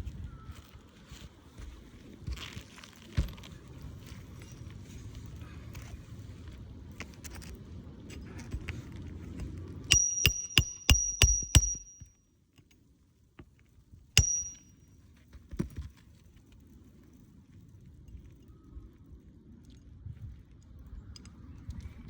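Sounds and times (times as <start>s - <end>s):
hammer nailing roof shingle: 9.9s - 12.1s.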